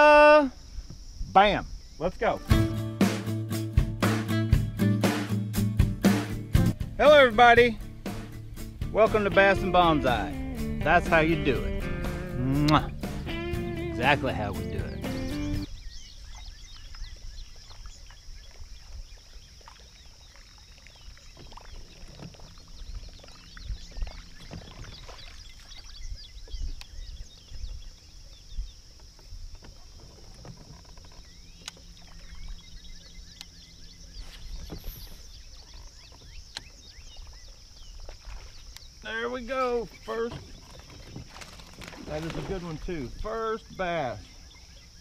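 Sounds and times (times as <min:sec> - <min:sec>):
knocks and clicks of boat: 0:14.0 - 0:45.0.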